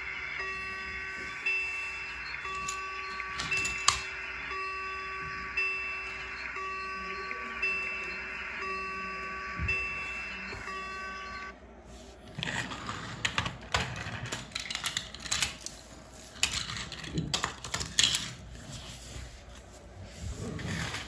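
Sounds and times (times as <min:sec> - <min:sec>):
electronic bell tones: 0:00.0 - 0:11.5.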